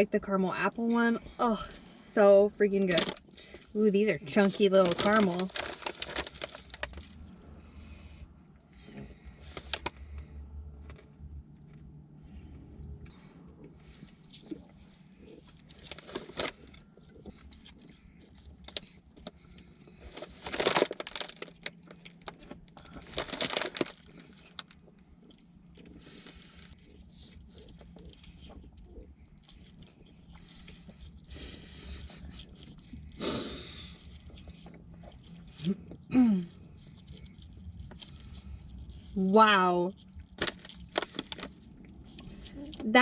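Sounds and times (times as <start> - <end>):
plastic wrapper crinkling: 2.9 - 7.4, 15.5 - 19.4, 20.0 - 24.8, 40.0 - 42.8
quiet chewing: 3.0 - 43.0.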